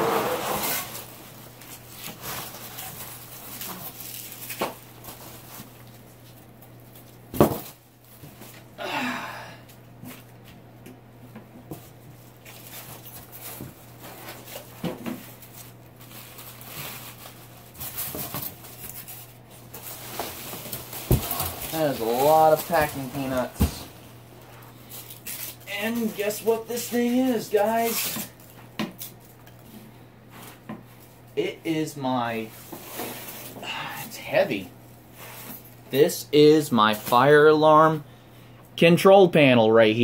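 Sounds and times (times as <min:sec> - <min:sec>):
packing peanuts rustling: 0:14.3 - 0:24.0, 0:24.9 - 0:28.4.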